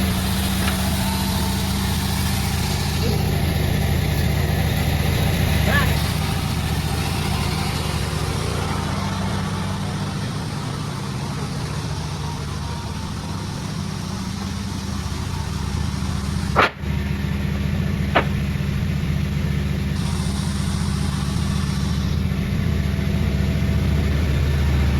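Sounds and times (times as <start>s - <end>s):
sawmill engine running: 0.0s - 24.9s
sharp knocks: 16.4s - 16.9s, 18.1s - 18.6s.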